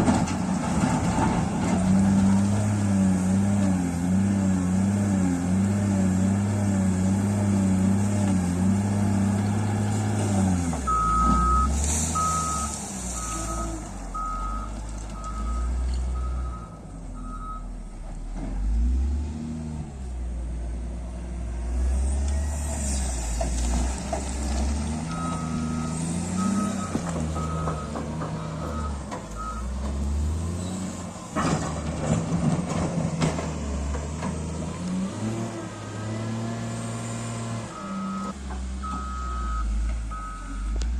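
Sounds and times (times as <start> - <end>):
heavy machinery diesel engine: 0.0 - 40.9
reversing alarm beeping: 10.9 - 17.8, 25.1 - 29.7, 37.7 - 40.8
clatter: 31.3 - 34.5.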